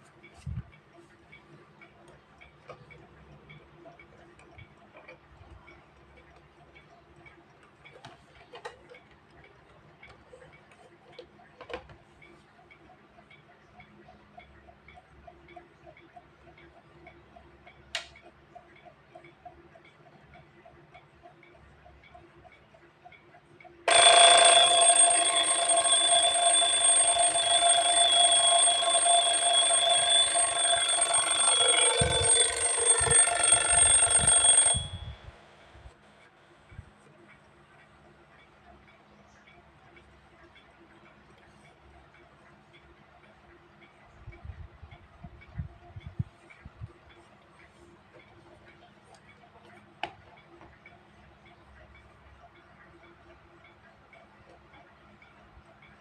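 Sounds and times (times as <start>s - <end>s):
alarm clock ticking: 0.0s - 56.0s
alarm clock ringing: 23.9s - 35.4s.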